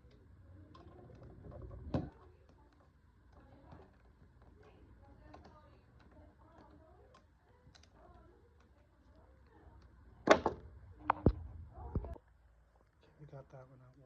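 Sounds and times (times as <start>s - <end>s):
faint tool clicks and ticks: 0.0s - 10.0s.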